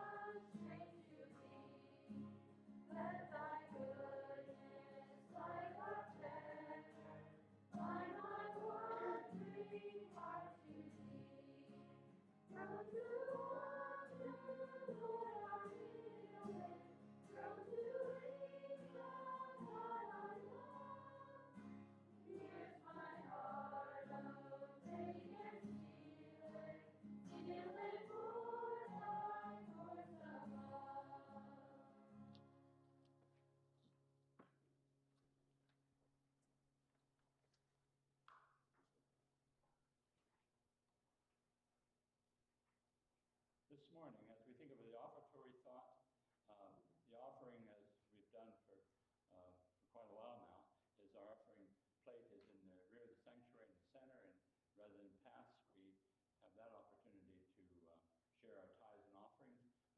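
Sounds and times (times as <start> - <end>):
choir singing a hymn: 0.0 - 2.3, 2.9 - 32.0.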